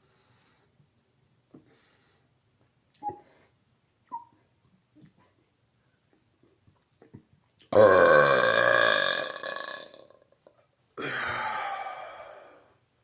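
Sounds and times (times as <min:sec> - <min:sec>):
man burping: 0:07.7 - 0:10.4, 0:11.0 - 0:12.2.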